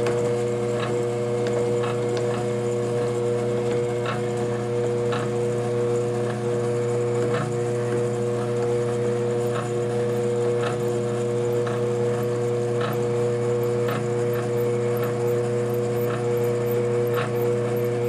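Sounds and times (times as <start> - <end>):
milling machine hum: 0.0 - 18.0
cutter ticking: 9.4 - 18.0.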